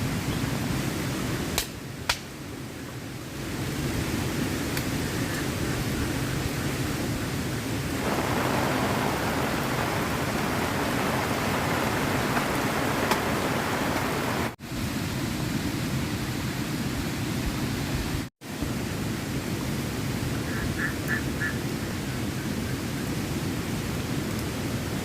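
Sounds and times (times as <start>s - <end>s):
heavy rain falling: 4.5s - 14.6s.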